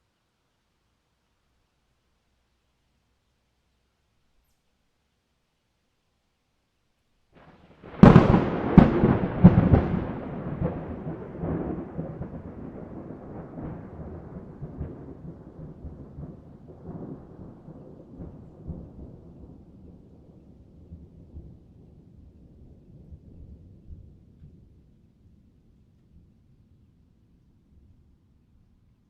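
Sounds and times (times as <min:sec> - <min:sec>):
thunder cracks: 0:07.4 - 0:20.3
long thunder rumble: 0:07.4 - 0:25.1.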